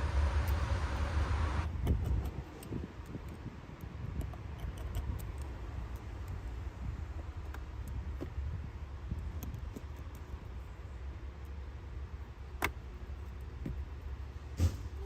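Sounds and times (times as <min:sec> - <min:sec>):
freeway traffic rumble: 0:00.0 - 0:15.0
small repair tool clicks: 0:01.8 - 0:06.4.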